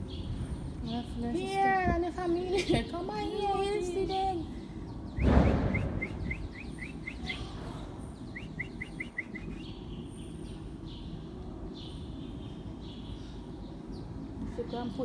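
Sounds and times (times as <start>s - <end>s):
small bird chirping: 4.9s - 11.2s
brief thump: 5.2s - 6.1s.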